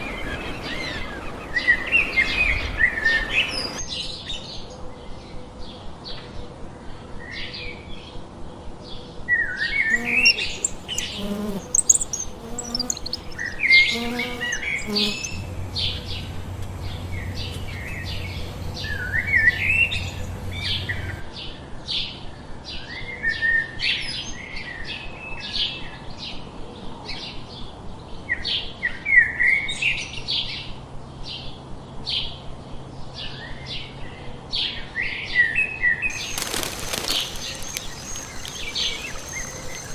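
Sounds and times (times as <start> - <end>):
small birds chirping: 9.9 - 21.2, 36.0 - 39.9
low pulsed bird calls: 37.3 - 39.9.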